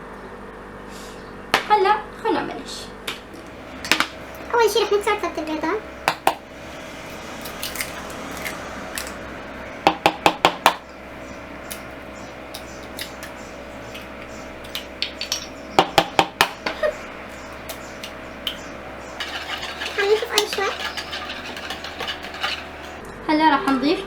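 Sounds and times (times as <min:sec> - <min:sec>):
eggs cracking against a bowl: 0:06.0 - 0:09.2, 0:11.5 - 0:23.0
kitchenware clinks: 0:19.2 - 0:23.0.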